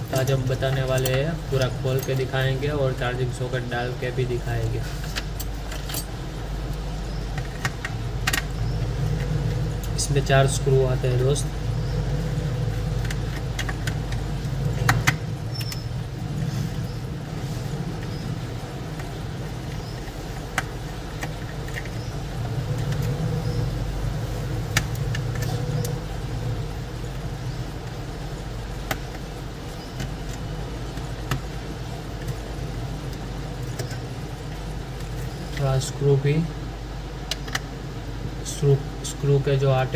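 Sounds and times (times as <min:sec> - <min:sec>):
low background rumble: 0:00.0 - 0:39.9.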